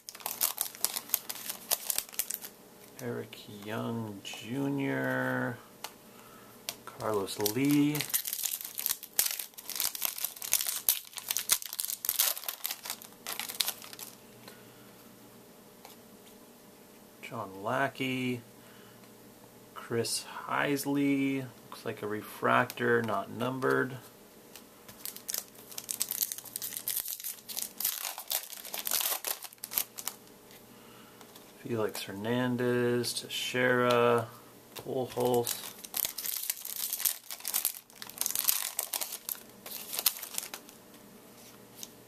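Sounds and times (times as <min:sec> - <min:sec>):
wrapper torn open and crinkled: 0:00.0 - 0:02.5, 0:07.1 - 0:14.2, 0:25.0 - 0:30.2, 0:35.1 - 0:40.7.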